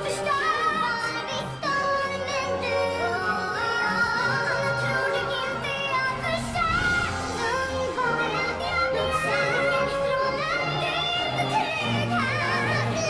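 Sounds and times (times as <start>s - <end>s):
women singing with voice effect: 0.0s - 13.0s
orchestral accompaniment: 3.6s - 11.4s.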